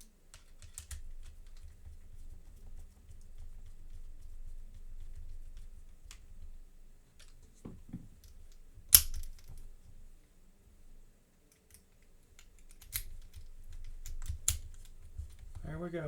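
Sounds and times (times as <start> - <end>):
padlock parts clicking: 0.0 - 1.7, 7.1 - 9.9, 11.5 - 15.6.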